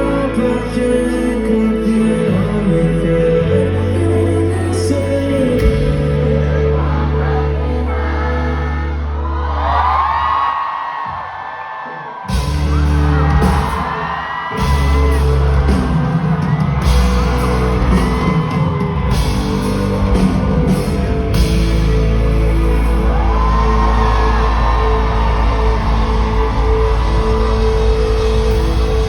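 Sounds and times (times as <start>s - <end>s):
pop-rock band playing live: 0.0s - 6.6s, 12.3s - 29.0s
person singing: 0.0s - 9.8s
crowd whooping: 6.8s - 29.0s.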